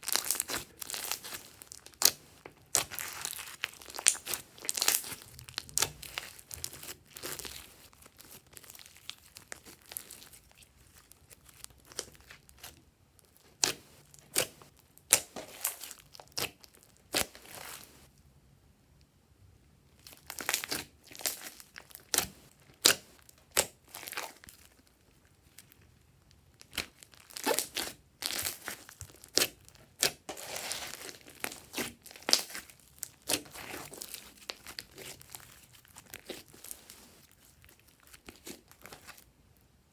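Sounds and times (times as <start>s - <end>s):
slime squeezed by hand: 0.0s - 10.4s, 26.6s - 37.4s.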